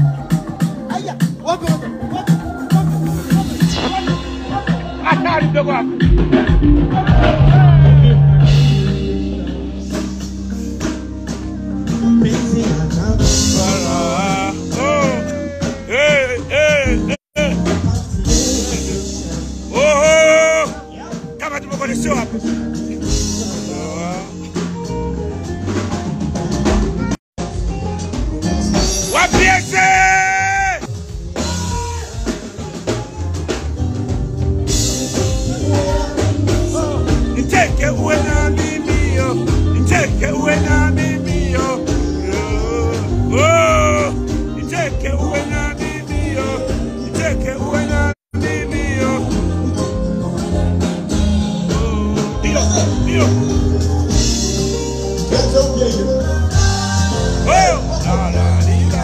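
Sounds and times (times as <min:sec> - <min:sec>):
drums: 0:00.0 - 0:59.0
live band music over pa: 0:00.0 - 0:59.0
voice: 0:13.6 - 0:17.7, 0:18.4 - 0:22.4, 0:29.1 - 0:30.9, 0:51.8 - 0:53.5.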